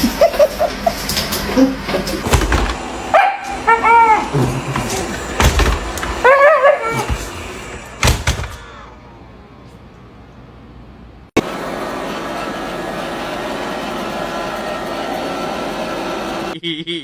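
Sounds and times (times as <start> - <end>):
dog barking and yipping: 3.0 - 5.4, 6.0 - 7.6.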